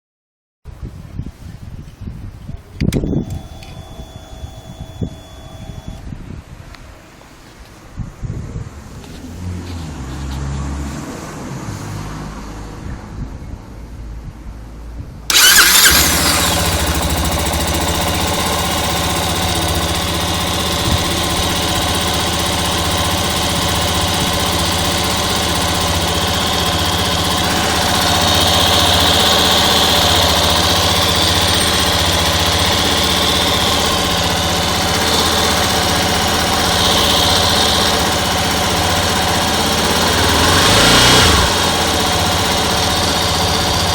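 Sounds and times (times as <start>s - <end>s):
motorcycle engine starting and idling: 2.7s - 6.1s, 15.3s - 43.9s.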